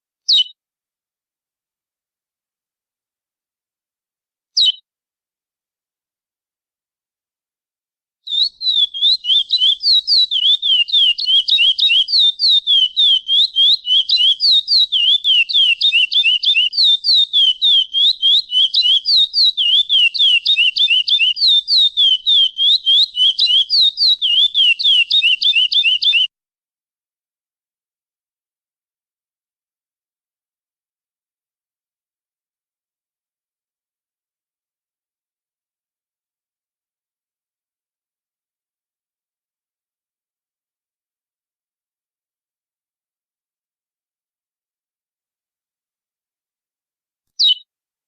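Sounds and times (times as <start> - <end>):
bird singing whistled notes: 8.3 - 26.3, 47.4 - 47.7.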